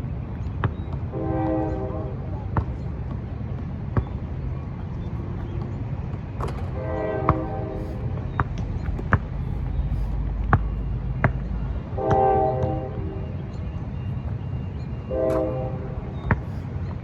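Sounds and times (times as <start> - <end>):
horn-like tone blasts: 6.7 - 8.2, 11.9 - 13.4, 15.0 - 16.3.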